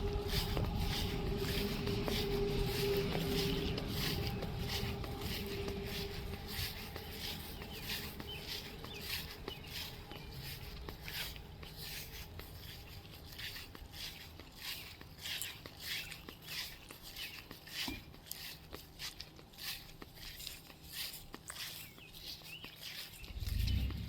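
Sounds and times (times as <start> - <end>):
footsteps crunching: 0.0 - 24.0
steady hum: 23.3 - 24.0.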